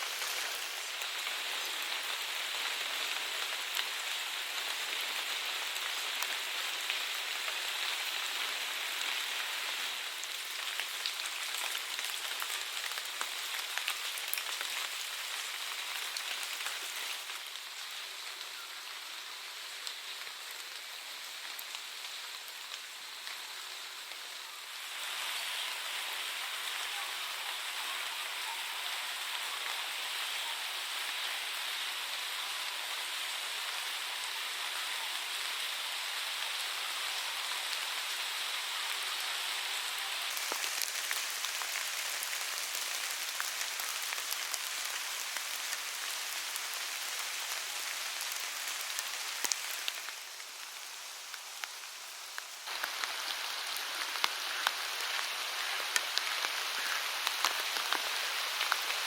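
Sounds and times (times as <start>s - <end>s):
rain falling: 0.0s - 59.0s.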